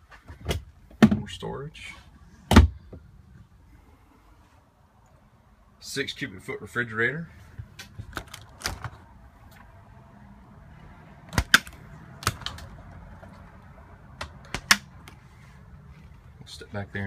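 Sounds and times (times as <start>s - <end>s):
refrigerator door clicks and knocks: 2.5s - 2.8s.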